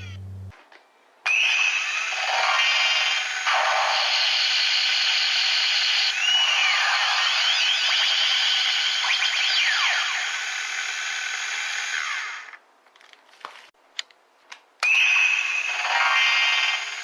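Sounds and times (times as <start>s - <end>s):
steady high electronic tone: 0.0s - 0.5s
toy electronic sound effects: 0.0s - 0.5s.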